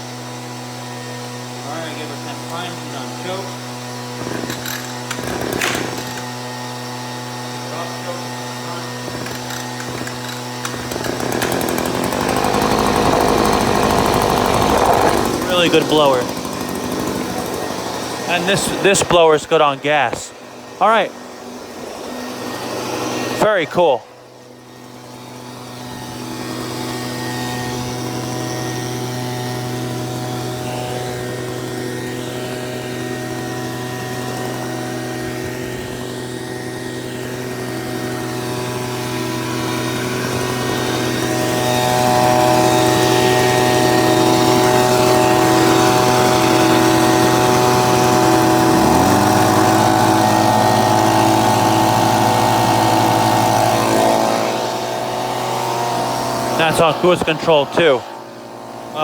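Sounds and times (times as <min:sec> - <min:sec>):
leaf blowers engine drone: 0:00.0 - 0:59.0.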